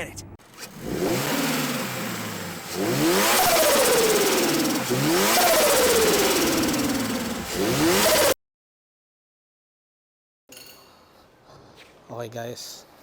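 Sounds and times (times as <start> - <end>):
car engine revving: 0.4 - 8.4.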